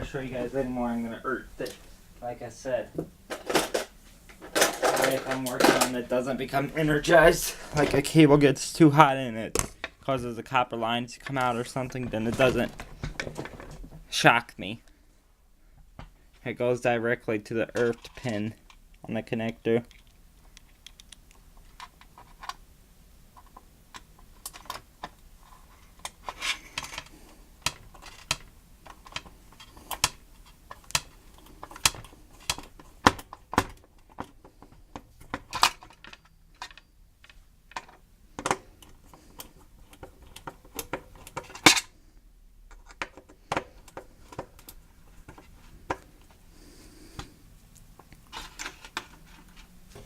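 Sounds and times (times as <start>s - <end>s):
metal parts and tools clinking: 3.3s - 6.0s.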